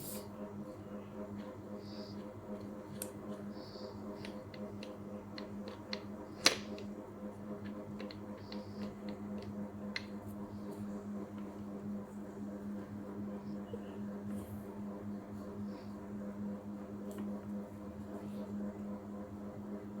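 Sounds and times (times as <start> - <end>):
low electrical hum: 0.0 - 20.0
objects clicking and tapping: 4.1 - 6.9, 7.6 - 10.3.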